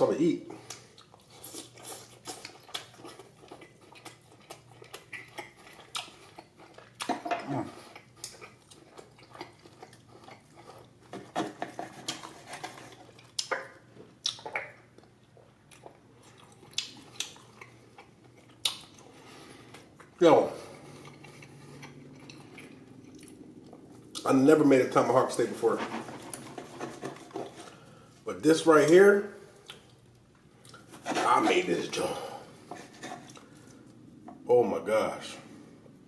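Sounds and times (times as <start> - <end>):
chewing: 0.5 - 24.3, 29.5 - 31.7, 32.5 - 34.4.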